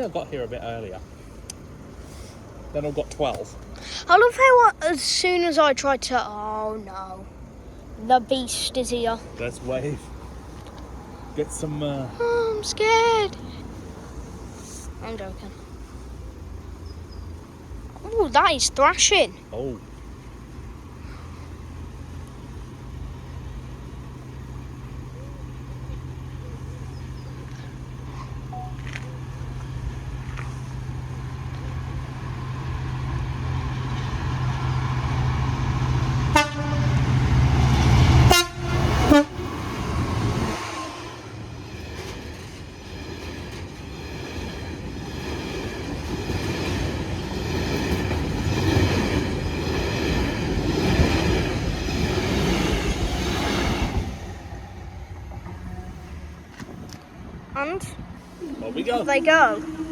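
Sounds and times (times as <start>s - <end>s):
locomotive engine droning: 0.0s - 5.2s, 5.8s - 59.9s
train horn: 36.3s - 37.2s, 38.2s - 39.6s, 40.5s - 41.4s, 55.4s - 56.4s, 59.0s - 59.9s
wagons clattering over rails: 41.3s - 54.5s.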